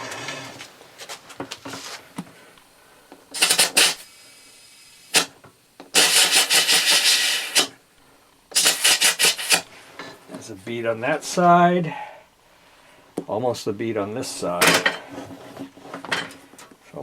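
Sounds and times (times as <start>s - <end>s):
compressed air hissing: 2.4s - 7.8s, 8.5s - 9.8s.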